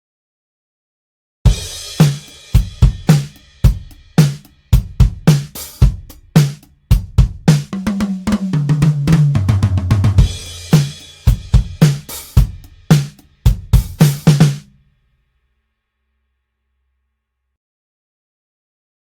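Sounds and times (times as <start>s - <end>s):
drum kit groove: 1.5s - 14.8s
tom fill: 1.5s - 14.8s.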